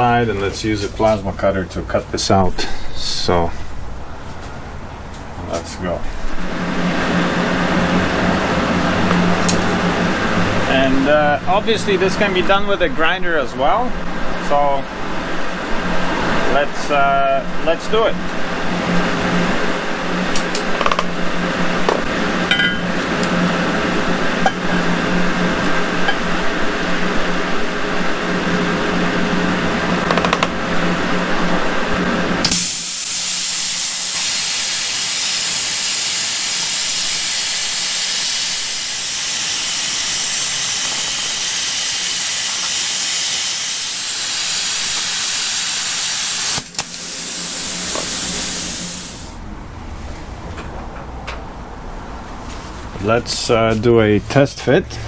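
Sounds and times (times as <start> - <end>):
machine hum: 0.0 - 55.0
plasma cutter hissing: 32.4 - 49.4.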